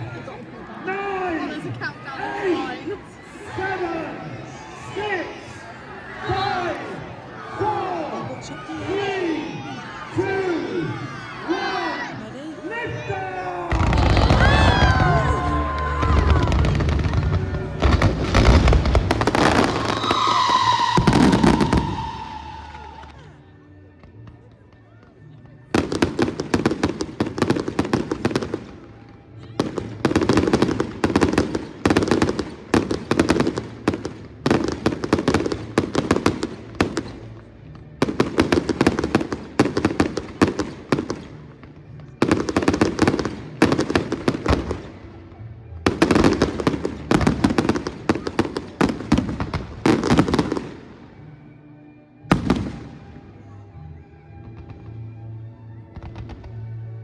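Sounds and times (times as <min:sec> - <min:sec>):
fireworks bangs and crackles: 0:13.0 - 0:23.2, 0:25.6 - 0:45.2, 0:45.8 - 0:51.1, 0:52.3 - 0:53.2, 0:54.4 - 0:55.0, 0:55.9 - 0:56.8.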